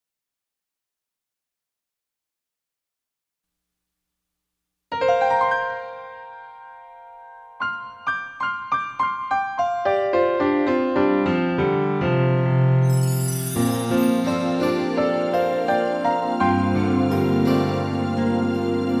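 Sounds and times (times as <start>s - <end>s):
electric piano chord: 13.6s - 19.0s
held bass notes: 14.4s - 19.0s.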